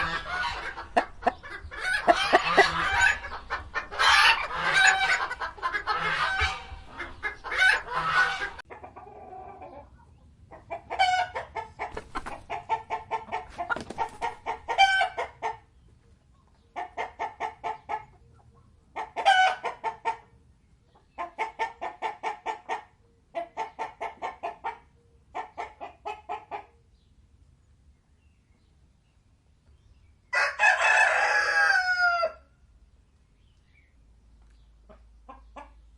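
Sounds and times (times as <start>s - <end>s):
chickens clucking: 0.0s - 26.8s, 34.4s - 35.9s.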